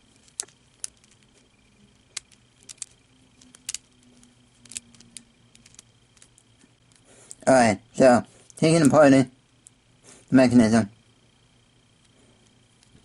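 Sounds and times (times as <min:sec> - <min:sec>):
plastic cube clicks: 0:02.1 - 0:06.4.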